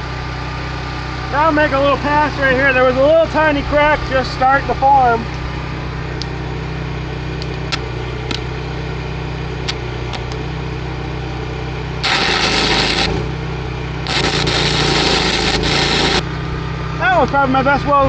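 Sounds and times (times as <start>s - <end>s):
gasoline generator humming: 0.0s - 18.0s
welding arc crackling: 12.0s - 13.3s, 13.9s - 16.2s.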